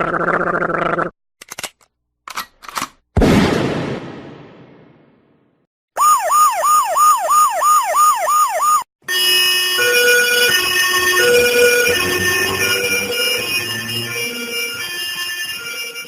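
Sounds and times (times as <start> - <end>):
electronic siren tone swooping: 6.0 - 16.0
held electronic tones stepping pitch: 6.0 - 16.0.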